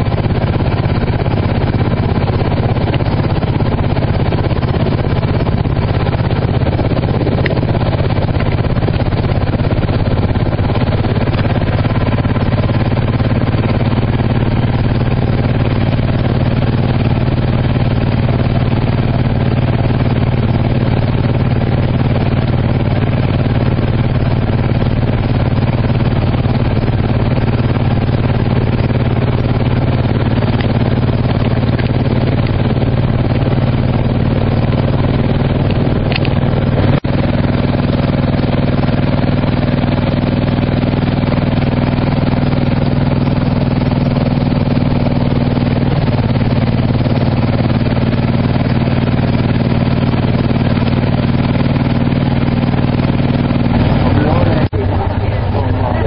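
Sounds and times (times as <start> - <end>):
engine running steadily: 0.0 - 56.0.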